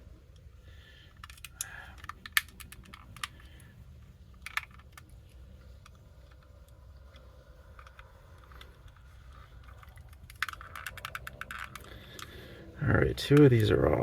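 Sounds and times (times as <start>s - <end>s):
plastic clips clicking: 4.4s - 12.4s.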